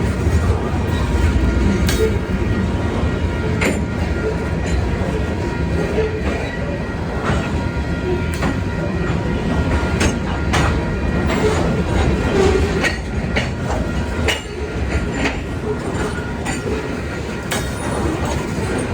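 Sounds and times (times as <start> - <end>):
train rumbling past: 0.0 - 18.9
wheels clacking over rail joints: 8.3 - 18.9.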